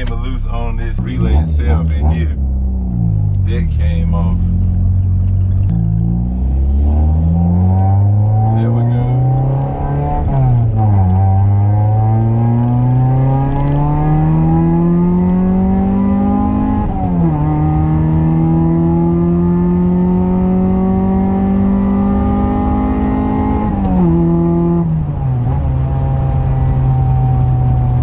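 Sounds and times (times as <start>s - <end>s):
car engine revving: 0.0s - 28.0s.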